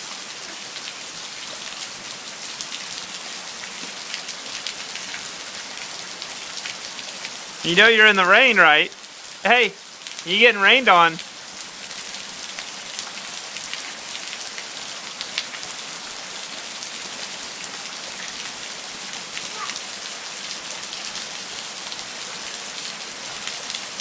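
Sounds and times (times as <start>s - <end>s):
steady rain hiss: 5.4s - 13.7s.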